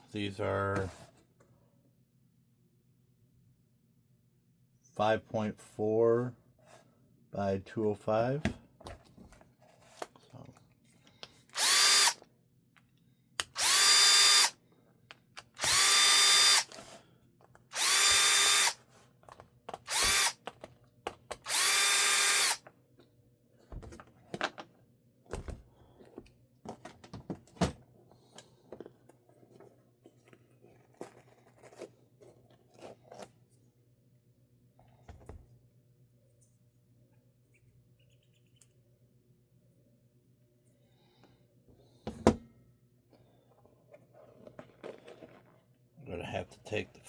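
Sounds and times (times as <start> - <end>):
electric drill motor whine: 11.6 - 12.2, 13.4 - 14.6, 15.6 - 16.8, 17.7 - 18.8, 19.9 - 20.4, 21.4 - 22.6.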